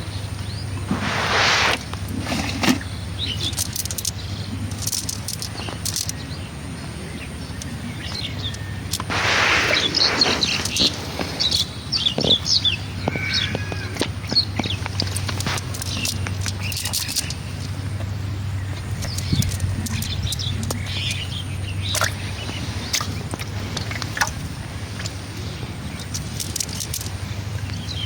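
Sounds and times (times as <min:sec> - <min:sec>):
outdoor background noise: 0:00.0 - 0:28.0
small birds chirping: 0:00.0 - 0:28.0
brief rushes of noise: 0:00.9 - 0:02.8, 0:09.1 - 0:11.7.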